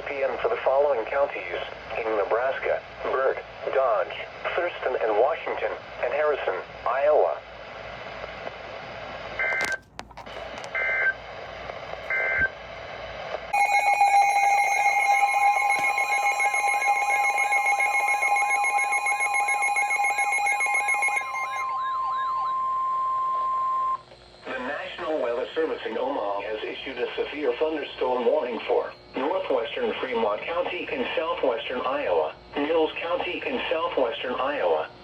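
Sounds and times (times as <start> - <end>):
radio alarm beeping and warble: 9.4 - 9.8, 10.6 - 11.2, 12.1 - 12.5, 13.6 - 25.1
steady warning alert tone: 13.6 - 22.9
screeching digital data tones: 13.6 - 24.0.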